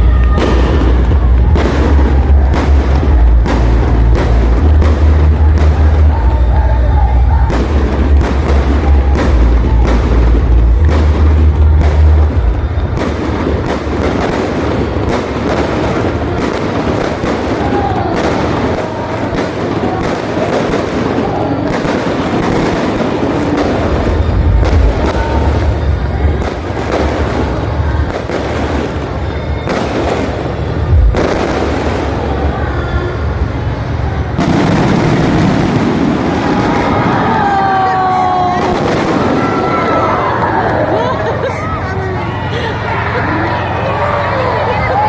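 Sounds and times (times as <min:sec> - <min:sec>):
music: 0:00.0 - 0:16.4
deep fireworks booms: 0:00.0 - 0:45.0
fireworks bursting with sharp bangs: 0:00.0 - 0:45.0.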